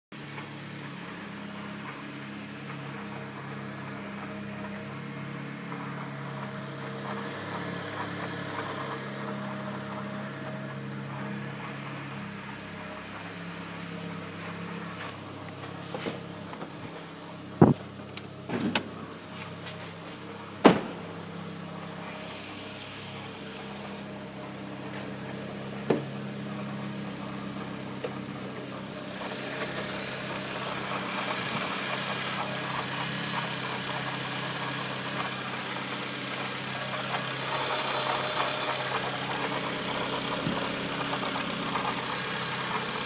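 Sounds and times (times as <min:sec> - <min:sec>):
car engine idling: 0:00.2 - 0:43.0
sharp knocks: 0:20.6 - 0:21.1.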